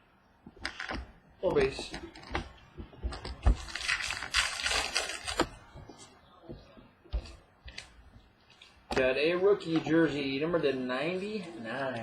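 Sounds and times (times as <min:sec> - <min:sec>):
cards rustling: 0:00.5 - 0:06.0, 0:07.2 - 0:09.9.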